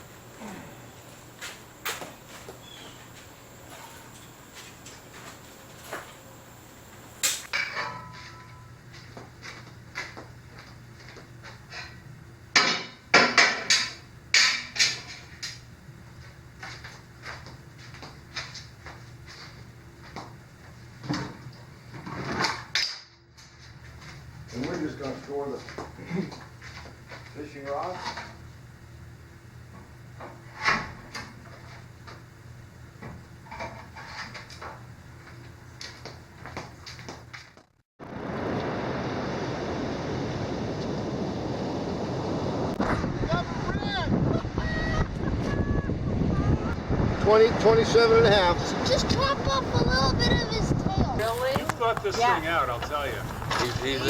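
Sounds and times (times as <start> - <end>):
steady low hum: 0.0 - 22.1, 38.0 - 54.0.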